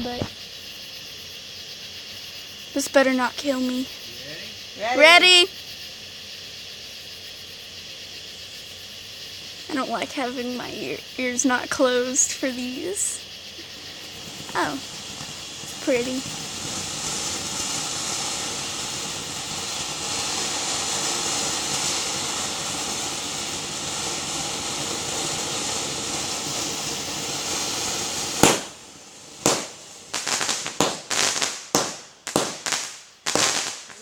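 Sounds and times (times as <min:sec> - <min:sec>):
firework cracks and pops: 0:00.0 - 0:00.8, 0:02.7 - 0:05.5, 0:06.3 - 0:34.0
firework spraying hiss: 0:00.0 - 0:34.0.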